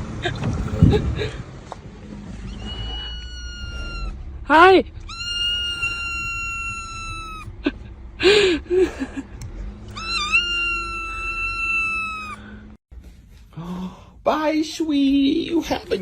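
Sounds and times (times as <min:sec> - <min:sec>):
pet crying: 0:02.4 - 0:04.2, 0:05.0 - 0:07.6, 0:09.9 - 0:12.5.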